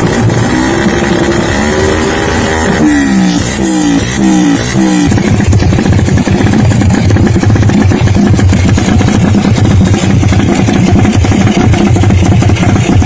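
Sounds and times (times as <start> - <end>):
racing motorcycle engine: 0.0 - 13.0.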